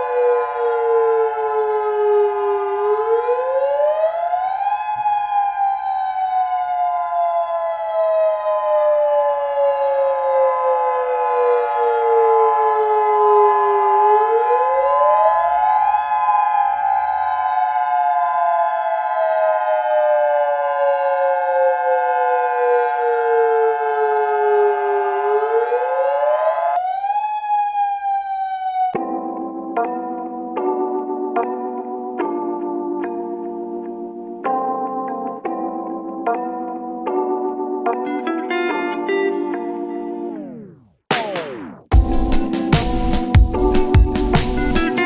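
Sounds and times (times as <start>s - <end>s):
siren wailing: 0.0s - 29.1s, 41.9s - 45.0s.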